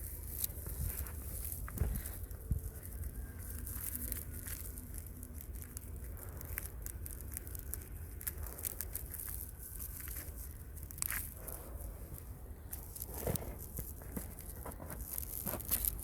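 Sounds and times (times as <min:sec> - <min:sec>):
wind rumble on microphone: 0:00.0 - 0:09.2
twigs and leaves crackling: 0:00.0 - 0:16.0.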